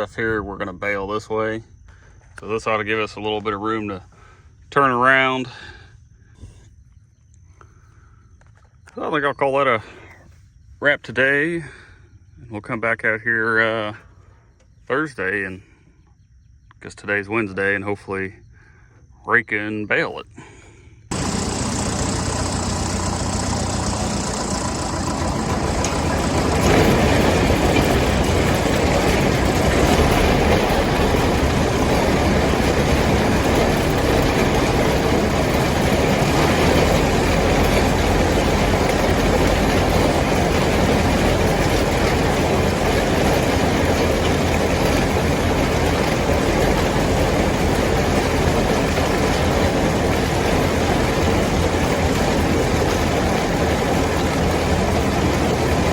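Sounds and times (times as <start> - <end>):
tractor engine running: 21.1 - 55.9.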